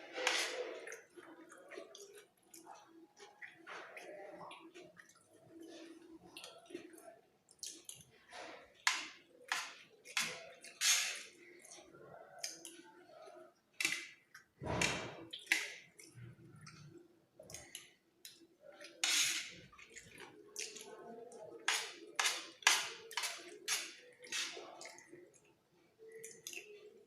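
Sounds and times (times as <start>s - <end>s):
spoon scraping a plate: 0.0s - 0.8s, 19.0s - 19.7s
chewing: 0.1s - 14.6s, 15.2s - 27.0s.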